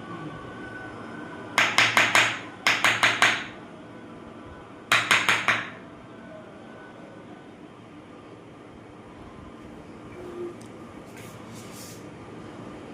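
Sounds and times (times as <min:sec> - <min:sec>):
sharp ringing knocks: 0:01.6 - 0:03.6.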